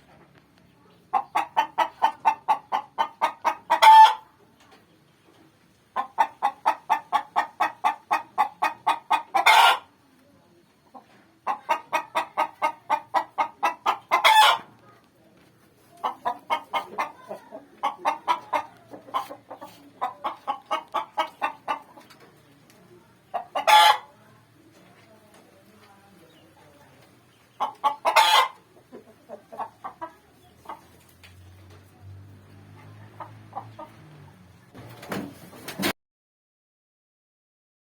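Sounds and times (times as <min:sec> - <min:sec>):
hen cackling and squawking: 0:01.1 - 0:04.4, 0:06.0 - 0:09.9, 0:11.4 - 0:14.8, 0:16.0 - 0:22.2, 0:23.2 - 0:24.2, 0:27.4 - 0:31.2, 0:32.8 - 0:34.1.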